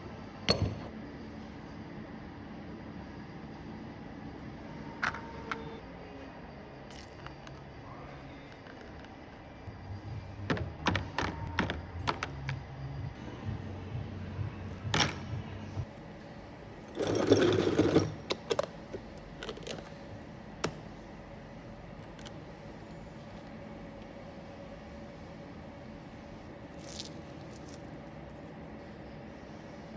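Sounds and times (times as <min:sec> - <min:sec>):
clicks of hard parts handled: 0:05.0 - 0:05.8, 0:10.5 - 0:12.6.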